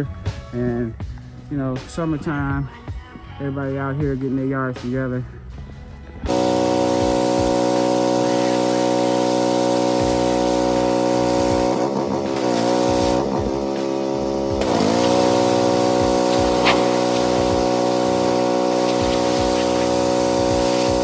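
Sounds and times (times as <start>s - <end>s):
pressure washer engine running: 6.3s - 21.0s
water spray hissing: 6.3s - 21.0s.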